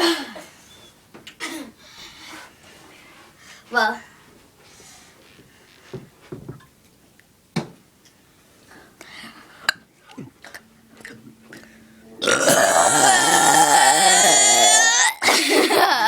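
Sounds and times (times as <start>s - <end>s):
girl burping loudly: 12.2s - 16.0s.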